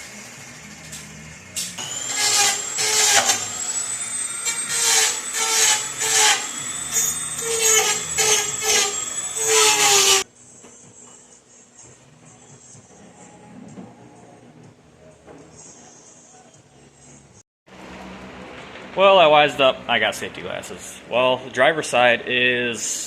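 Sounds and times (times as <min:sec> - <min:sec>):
angle grinder cutting metal: 0:00.6 - 0:10.3.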